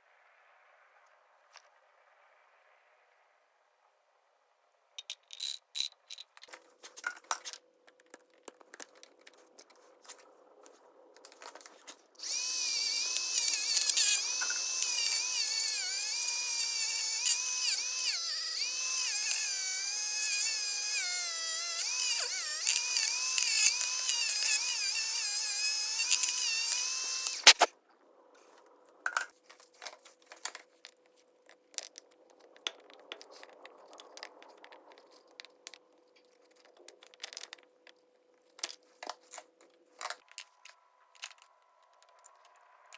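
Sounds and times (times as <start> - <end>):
electric power drill running: 12.2 - 27.7
tool handling clicks: 22.0 - 27.7.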